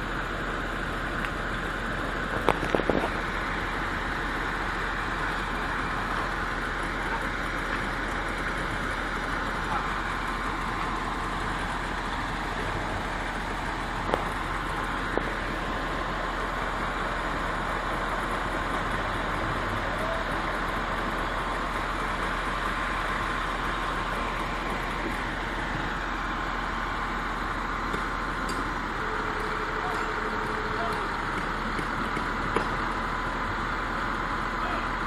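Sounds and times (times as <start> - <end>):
heavy vehicle engine running: 0.0 - 35.0.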